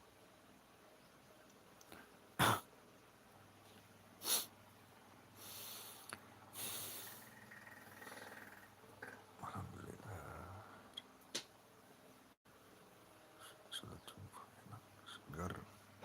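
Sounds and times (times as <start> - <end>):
cat sneezing: 2.4 - 2.7, 4.2 - 4.5
cat snorting breaths: 5.4 - 7.3.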